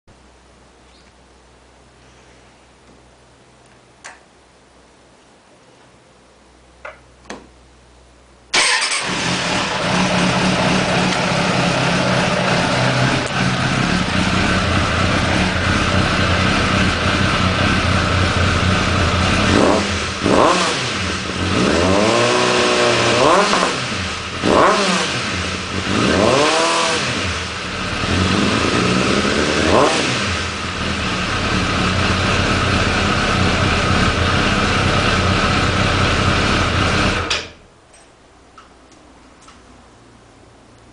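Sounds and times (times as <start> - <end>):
engine revving: 8.6 - 37.3
motorcycle engine idling loudly: 9.0 - 21.8, 26.9 - 37.3.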